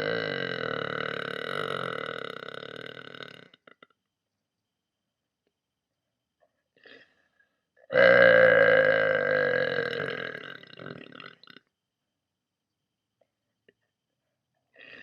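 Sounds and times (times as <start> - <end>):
woman burping: 0.0 - 3.9, 7.9 - 11.6.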